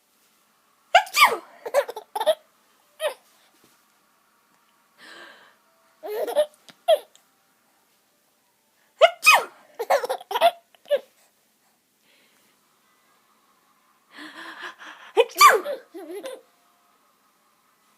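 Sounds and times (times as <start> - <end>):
person sneezing: 1.0 - 1.5, 15.3 - 15.8.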